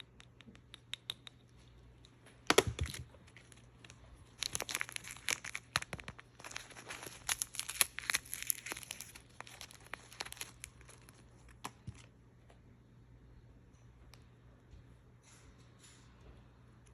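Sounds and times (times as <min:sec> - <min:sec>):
packaging crinkling and tearing: 0:02.5 - 0:12.1.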